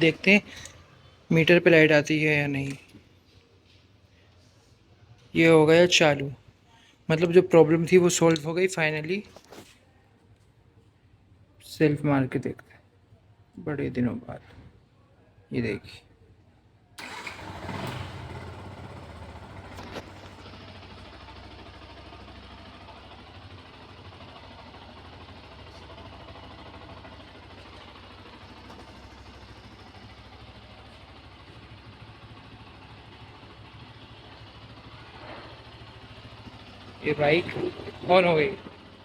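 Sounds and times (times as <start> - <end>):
electric starter: 17.0 - 20.4
motorcycle engine idling: 17.0 - 39.0.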